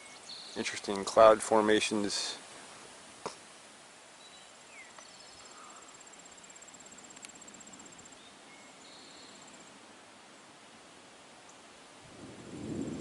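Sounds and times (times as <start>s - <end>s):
outdoor hiss: 0.0s - 13.0s
insects trilling: 4.6s - 9.8s.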